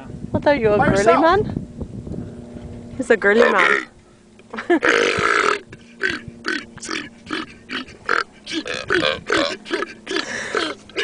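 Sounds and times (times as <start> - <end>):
person burping: 4.7 - 11.0.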